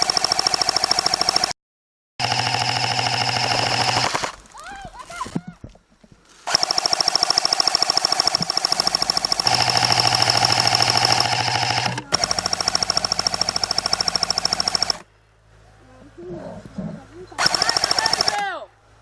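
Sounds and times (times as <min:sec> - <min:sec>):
airsoft gun firing bursts: 0:00.0 - 0:01.6, 0:02.2 - 0:04.4, 0:06.5 - 0:15.0, 0:17.4 - 0:18.5
motor and gearbox whine: 0:02.2 - 0:04.4, 0:06.5 - 0:15.0.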